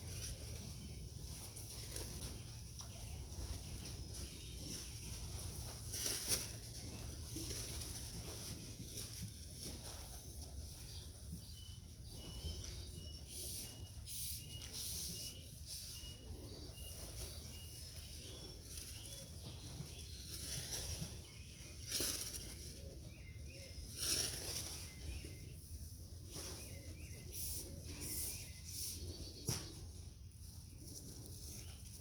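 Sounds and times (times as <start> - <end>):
bird chirping: 10.8 - 29.8.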